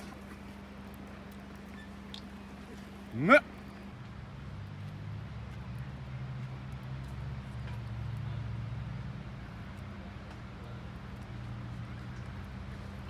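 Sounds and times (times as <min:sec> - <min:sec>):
low engine hum: 0:00.0 - 0:13.0.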